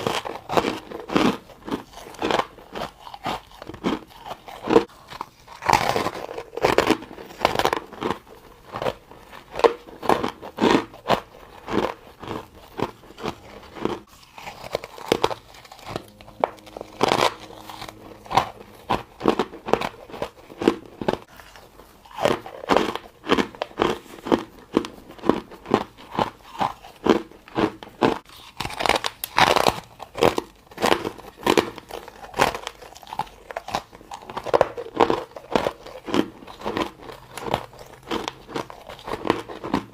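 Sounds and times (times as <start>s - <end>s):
person chewing ice: 0.0s - 39.9s.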